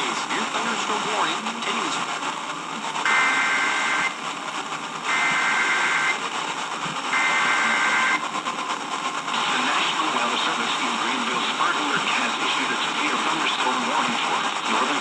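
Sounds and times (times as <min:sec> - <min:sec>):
radio static hiss: 0:00.0 - 0:15.0
two-tone data burst squawks: 0:03.1 - 0:04.2, 0:05.1 - 0:06.2, 0:07.2 - 0:08.2.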